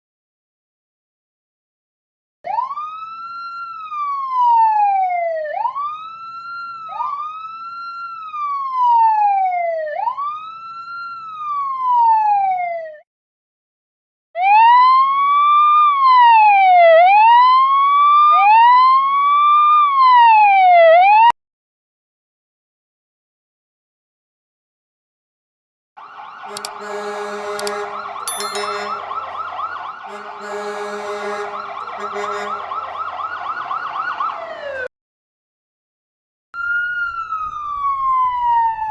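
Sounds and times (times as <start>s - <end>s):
emergency vehicle siren wailing: 2.5s - 12.9s, 14.4s - 21.3s, 26.0s - 34.9s, 36.6s - 38.9s
second siren rising and falling: 26.0s - 34.9s, 36.6s - 38.9s.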